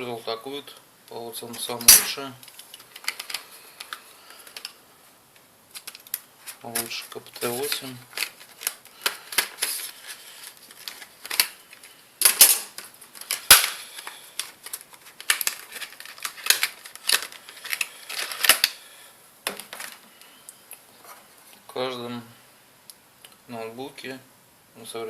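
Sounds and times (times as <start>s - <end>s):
clicks of small parts and tools: 10.8s - 18.8s.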